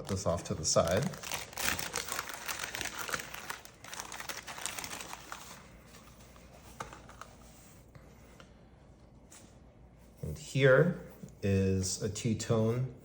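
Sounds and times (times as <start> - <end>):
packaging wrap crinkling: 0.0 - 6.0.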